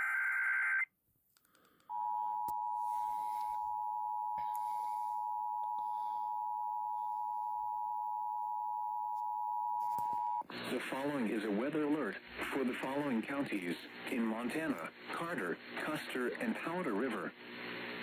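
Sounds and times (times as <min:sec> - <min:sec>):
two-tone alarm: 0:01.9 - 0:10.4.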